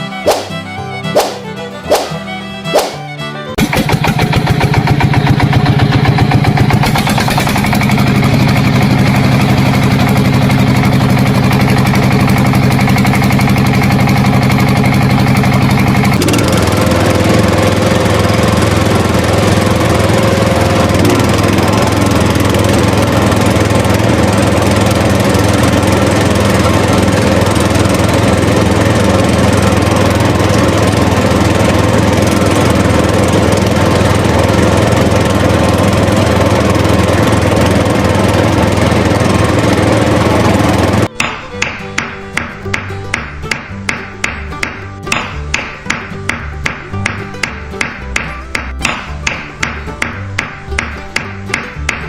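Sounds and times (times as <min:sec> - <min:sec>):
small motor running: 0:03.8 - 0:41.1.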